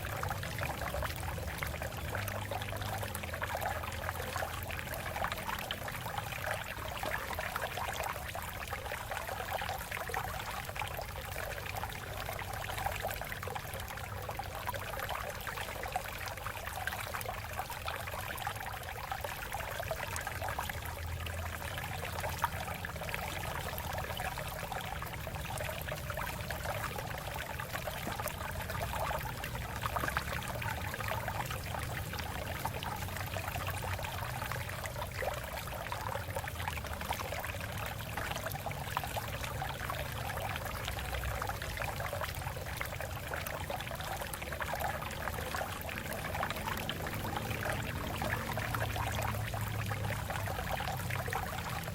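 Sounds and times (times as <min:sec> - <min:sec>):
water trickling over rocks: 0:00.0 - 0:51.9.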